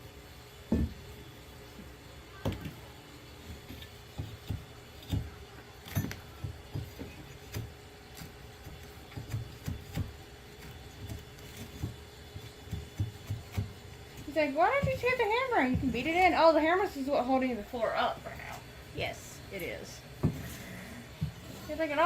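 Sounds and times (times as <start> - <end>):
hand tools knocking on floorboards: 0.7 - 1.0.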